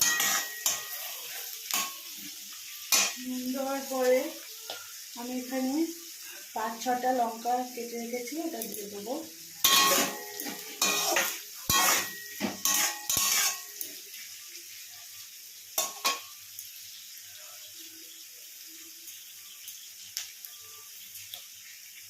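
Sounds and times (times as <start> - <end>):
spatula scraping a pan: 0.0 - 3.2, 9.6 - 14.2
vegetables sizzling in oil: 0.0 - 22.0.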